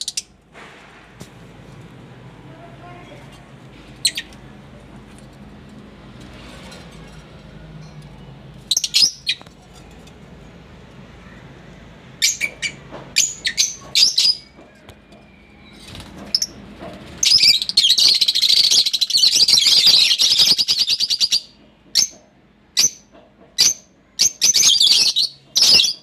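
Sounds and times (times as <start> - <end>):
lovebirds chirping: 2.8 - 4.6, 7.6 - 9.7.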